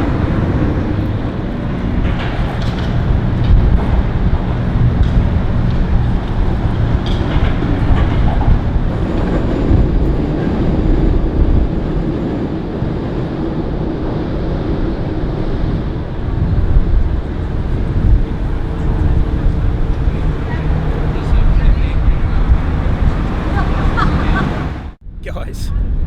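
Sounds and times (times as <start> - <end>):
train rumbling overhead: 0.0 - 25.9.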